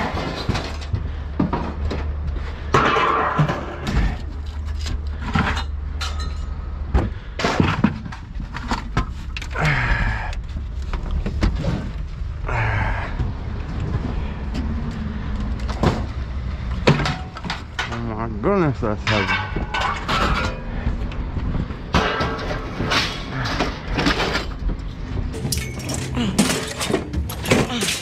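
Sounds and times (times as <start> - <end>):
scrap metal knocks and thuds: 0.0 - 9.3, 15.6 - 28.0
low engine rumble: 0.0 - 27.8
sheet metal clanging: 2.7 - 3.9, 19.0 - 20.8, 21.8 - 24.6.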